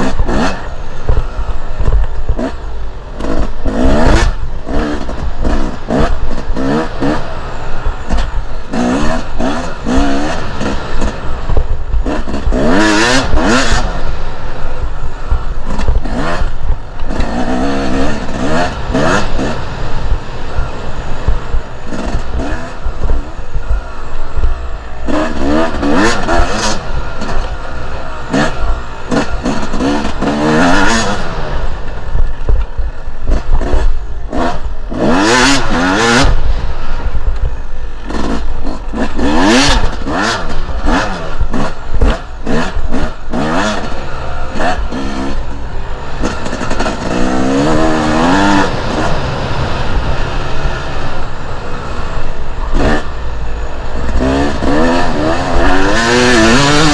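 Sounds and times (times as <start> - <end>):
low rumble: 0.0 - 43.3
motorcycle engine revving: 0.0 - 56.9.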